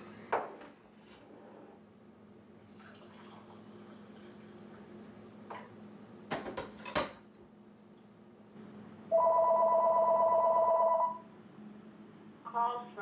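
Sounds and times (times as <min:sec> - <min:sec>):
telephone two-tone ring: 0:09.2 - 0:11.2.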